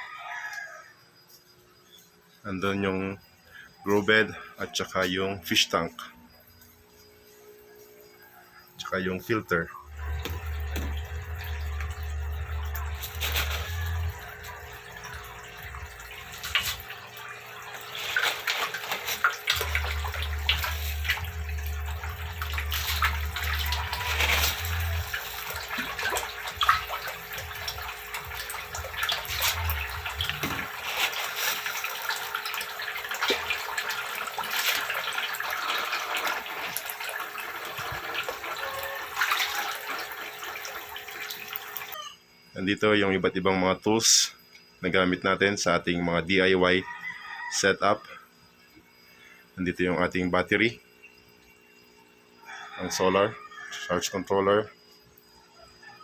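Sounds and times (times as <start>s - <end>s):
running water: 8.8s - 42.0s
small splashes and drips: 9.9s - 42.0s.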